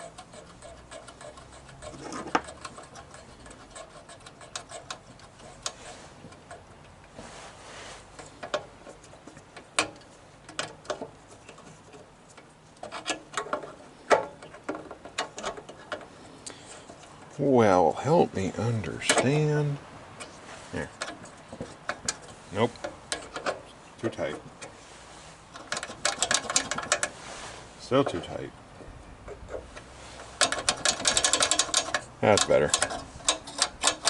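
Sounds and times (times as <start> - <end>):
tools and small parts clicking: 25.5 - 27.1, 29.3 - 34.0.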